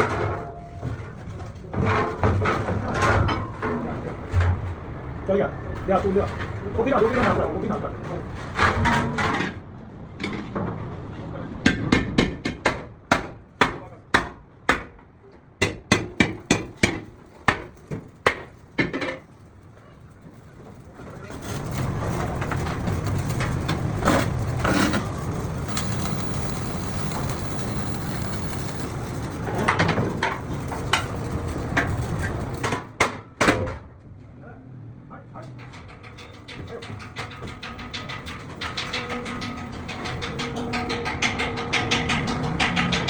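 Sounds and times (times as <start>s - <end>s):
noisy workshop machine: 16.2s - 32.9s.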